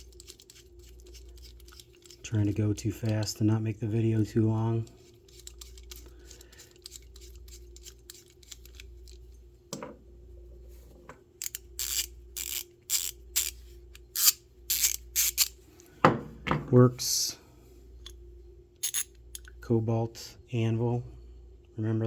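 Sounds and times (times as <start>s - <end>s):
ratchet clicking: 4.8s - 8.9s, 11.4s - 15.6s.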